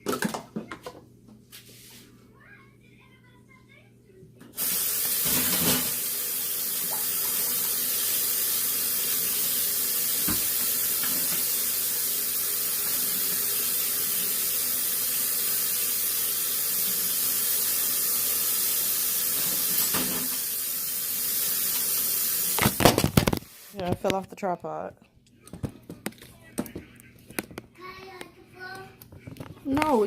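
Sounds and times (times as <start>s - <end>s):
tap running into sink: 10.1s - 11.6s, 19.3s - 20.5s.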